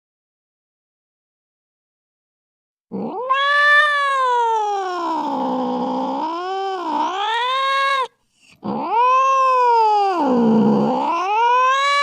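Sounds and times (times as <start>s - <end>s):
cat yowling: 2.9s - 12.0s.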